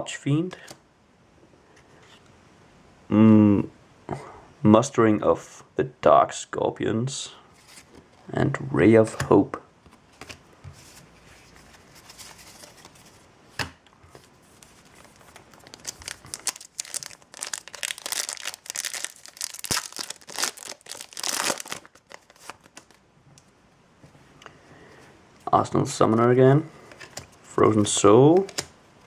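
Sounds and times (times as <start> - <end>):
foil wrapper tearing and crinkling: 15.1 - 23.0.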